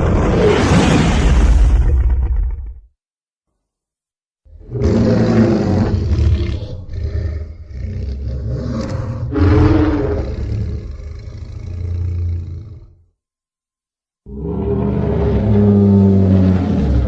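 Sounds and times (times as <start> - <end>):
low growling monster roar: 4.6 - 13.0, 14.3 - 17.0.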